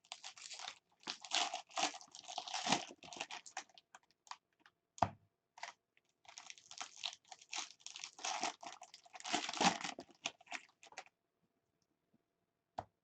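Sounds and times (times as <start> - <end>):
foil wrappers tearing and crinkling: 0.1 - 3.8, 6.3 - 11.0.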